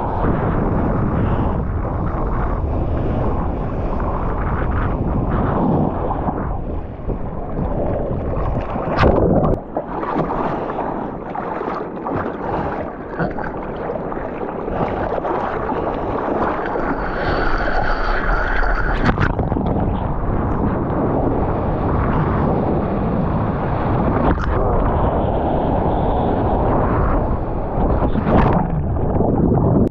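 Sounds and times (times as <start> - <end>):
sea water rushing and splashing: 0.0 - 29.9
wind buffeting microphone: 0.0 - 29.9
sharp water splash: 8.2 - 19.8, 28.1 - 29.3.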